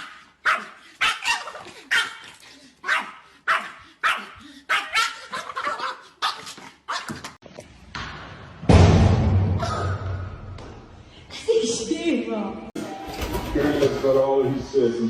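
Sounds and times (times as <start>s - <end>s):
dog barking: 0.0s - 7.2s.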